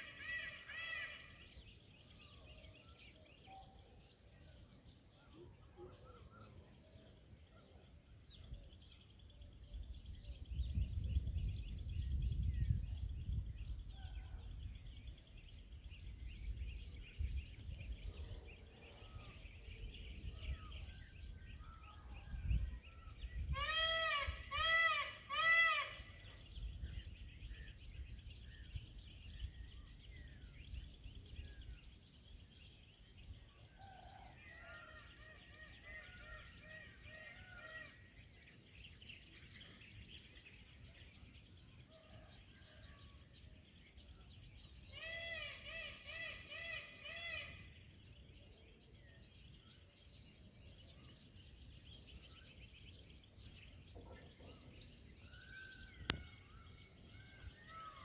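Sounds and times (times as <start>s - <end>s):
small birds chirping: 1.0s - 34.3s, 37.2s - 58.0s
wind rumble on microphone: 8.4s - 24.6s, 26.1s - 33.5s
peacock calling: 23.0s - 26.4s, 44.9s - 47.8s.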